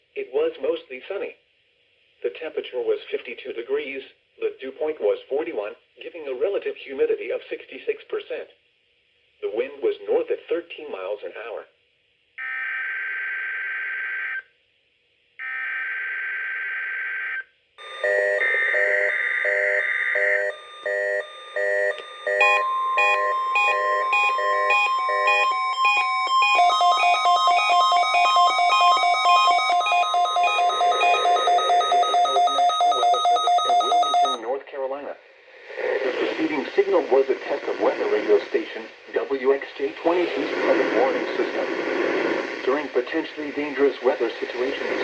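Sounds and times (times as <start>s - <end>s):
electronic alert beeps: 17.8s - 34.4s
long steady tone: 17.8s - 34.5s.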